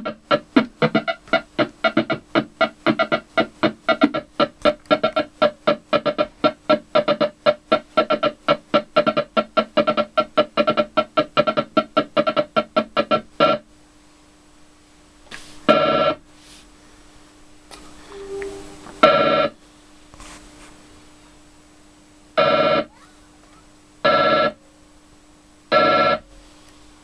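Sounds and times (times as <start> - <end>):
short pitched synth pulses: 0.0 - 13.6.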